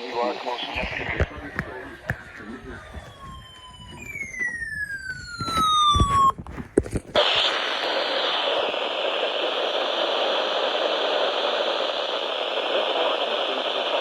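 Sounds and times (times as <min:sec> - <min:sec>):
radio static hiss: 0:00.0 - 0:03.4, 0:05.3 - 0:14.0
radio whistle gliding downward: 0:00.0 - 0:06.4.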